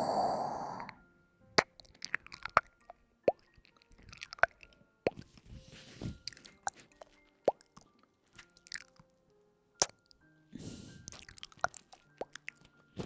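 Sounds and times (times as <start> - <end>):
soft wet clicks and plops: 1.6 - 5.4, 6.2 - 9.0, 11.1 - 12.8.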